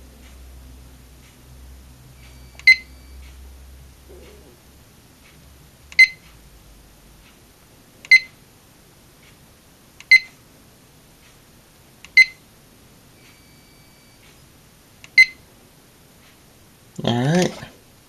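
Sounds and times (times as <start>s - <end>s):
faint steady beep: 2.2s - 3.2s, 6.0s - 6.2s, 8.1s - 8.3s, 10.1s - 10.3s, 12.2s - 12.4s, 13.2s - 14.5s, 15.2s - 15.4s.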